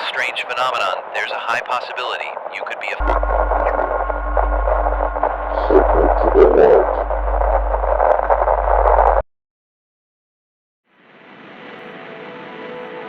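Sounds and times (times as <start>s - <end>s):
loud static: 0.0s - 9.2s
news audio: 0.0s - 9.2s
steady tones: 1.1s - 9.2s
heavy low hum: 2.6s - 9.2s.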